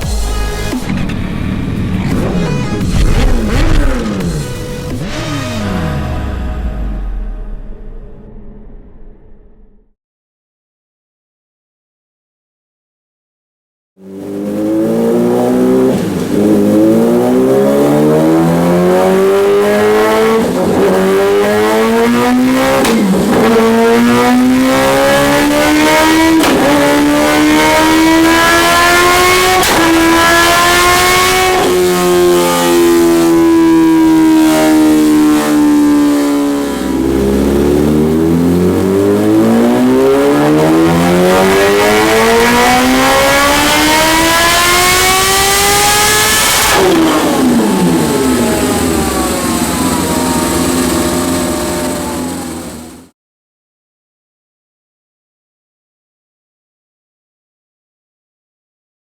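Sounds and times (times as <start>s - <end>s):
motorcycle engine revving on dyno: 0.0s - 6.5s, 14.0s - 53.1s.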